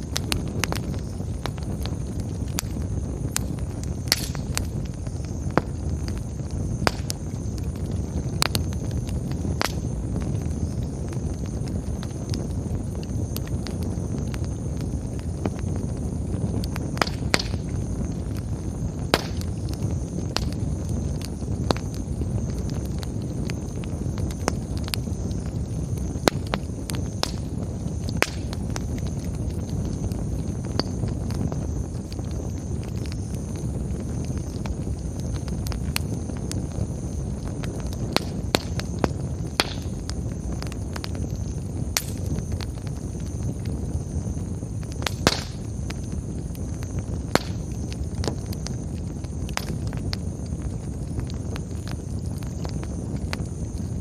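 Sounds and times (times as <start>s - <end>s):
campfire crackling and popping: 0.0s - 54.0s.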